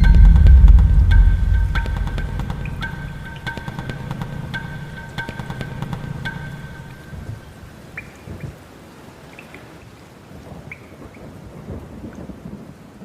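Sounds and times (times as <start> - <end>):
thunder rumble: 0.0 - 6.3
raindrop ticks: 0.0 - 8.7, 9.3 - 13.0
rain hiss: 0.0 - 13.0.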